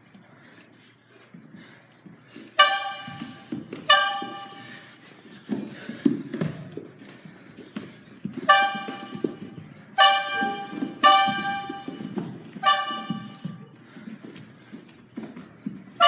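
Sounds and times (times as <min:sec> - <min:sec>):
murmur of room noise: 0:00.0 - 0:16.0
brassy horn blasts: 0:02.5 - 0:04.8, 0:08.4 - 0:13.6.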